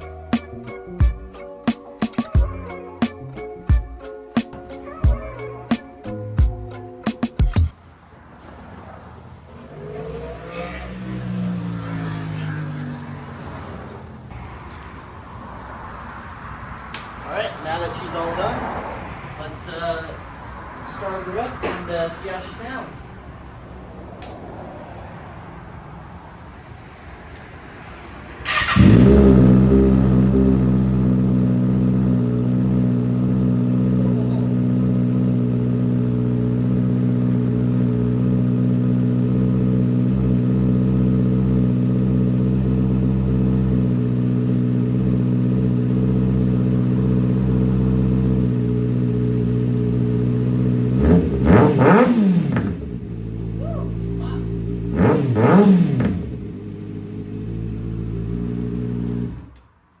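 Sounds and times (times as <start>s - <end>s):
motorcycle engine idling: 0.0s - 4.1s, 28.5s - 59.6s
motorcycle throttle blips: 8.4s - 14.0s, 28.5s - 59.7s.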